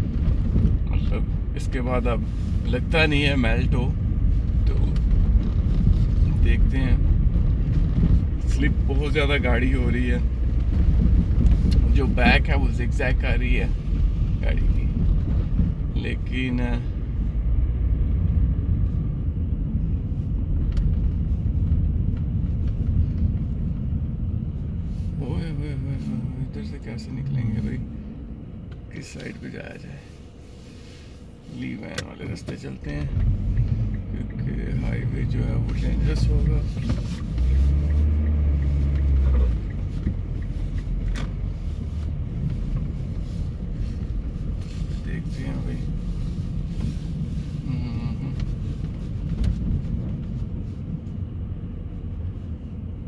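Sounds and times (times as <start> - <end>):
car driving on snowy road: 0.0 - 53.0
click inside car: 31.8 - 34.5, 35.6 - 43.3.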